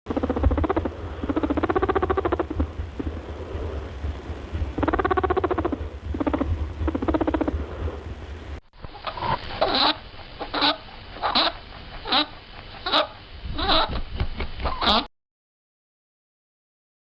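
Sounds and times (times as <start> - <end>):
rabbit buzzing: 0.1 - 8.4
steady low hum: 0.1 - 14.7.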